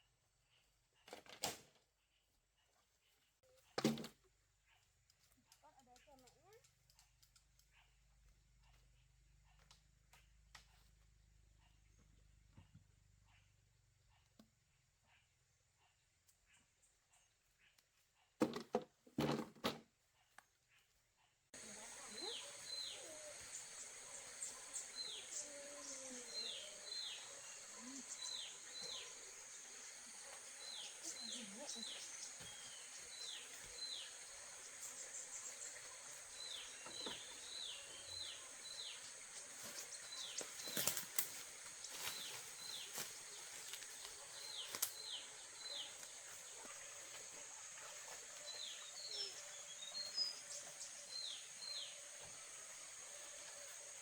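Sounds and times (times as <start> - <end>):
bird chirping: 21.6 - 54.0
high insect drone: 21.6 - 54.0.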